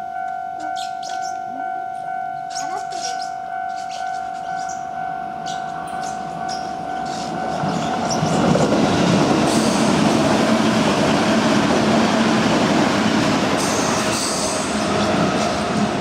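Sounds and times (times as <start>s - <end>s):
high wheel squealing: 2.4s - 10.5s
train wheels rumbling on rail: 2.5s - 16.0s.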